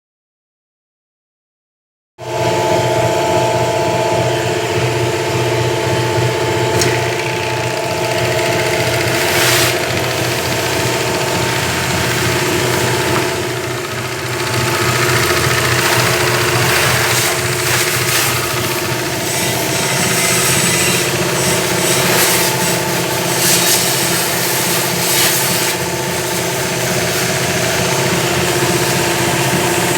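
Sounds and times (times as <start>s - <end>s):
high-pressure pump humming: 3.0s - 29.9s.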